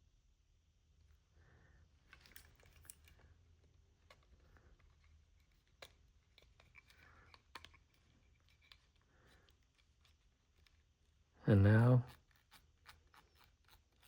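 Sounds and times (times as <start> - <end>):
plastic parts clicking and tapping: 4.0 - 10.8.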